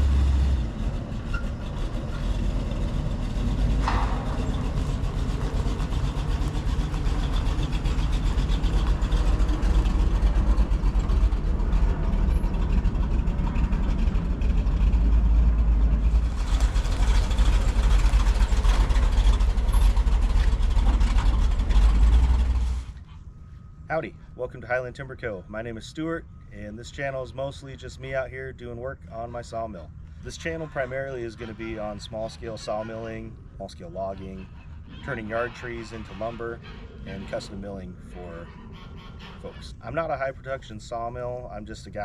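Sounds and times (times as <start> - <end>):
rushing noise: 0.0 - 22.9
truck engine rumbling: 0.0 - 42.0.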